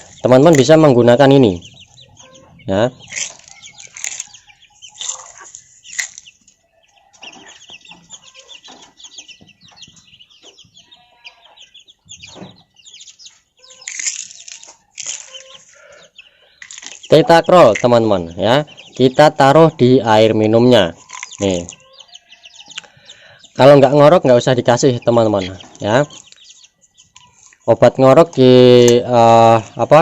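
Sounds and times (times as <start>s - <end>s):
chickens clucking: 0.0s - 30.0s
chicks peeping: 0.0s - 30.0s.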